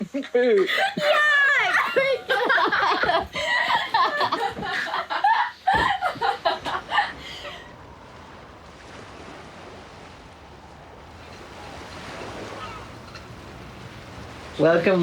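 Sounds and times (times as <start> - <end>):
people laughing: 0.0 - 7.8
waves: 0.0 - 15.0
wind: 0.0 - 15.0.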